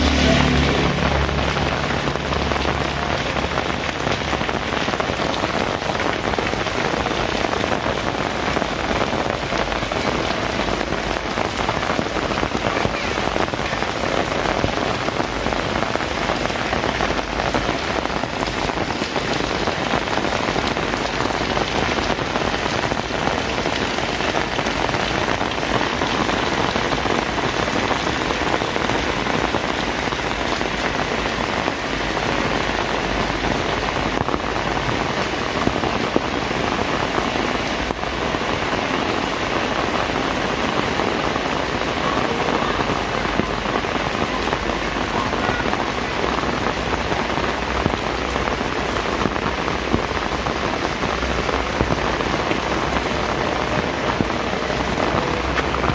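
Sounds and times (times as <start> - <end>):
heavy rain falling: 0.0 - 55.9.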